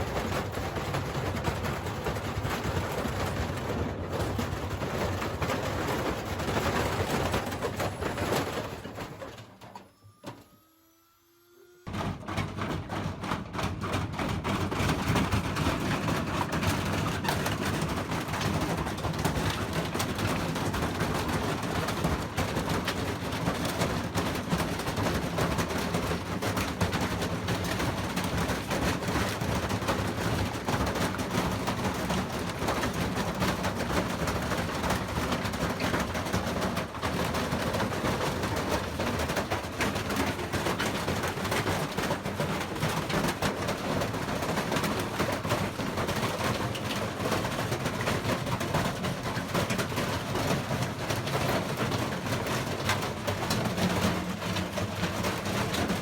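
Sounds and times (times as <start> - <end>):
washing machine spinning: 0.0 - 56.0.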